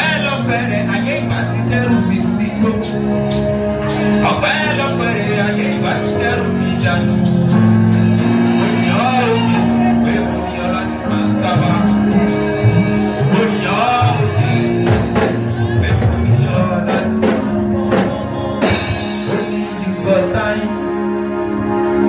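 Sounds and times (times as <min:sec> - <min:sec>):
gospel band playing: 0:00.0 - 0:22.0
guitar: 0:00.0 - 0:22.0
people singing: 0:08.8 - 0:21.2.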